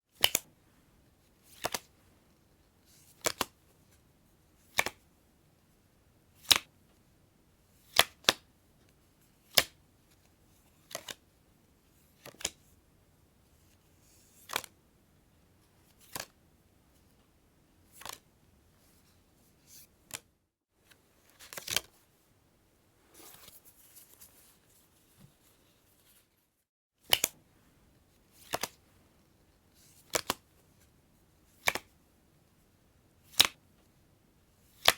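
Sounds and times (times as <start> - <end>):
playing cards snapping: 0.2 - 0.4, 1.6 - 1.9, 3.2 - 3.5, 4.7 - 5.0, 6.4 - 6.7, 7.9 - 8.4, 10.9 - 11.2, 27.1 - 27.4, 28.4 - 28.8, 30.1 - 30.4, 31.6 - 31.9, 33.3 - 33.6
cards rustling: 21.2 - 22.0, 29.8 - 30.4.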